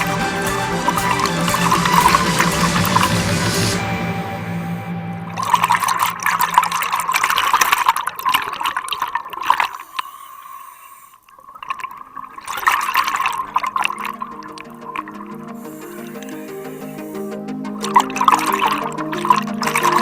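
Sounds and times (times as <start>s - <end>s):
background music: 0.0s - 7.6s, 13.2s - 20.0s
seawater splashing: 0.0s - 20.0s.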